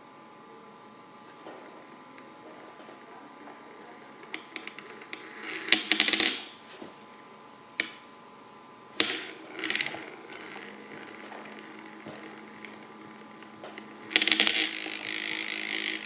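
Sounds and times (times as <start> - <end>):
faint steady hum: 0.0 - 16.0
coin rattling on stirrer plate: 14.1 - 16.0.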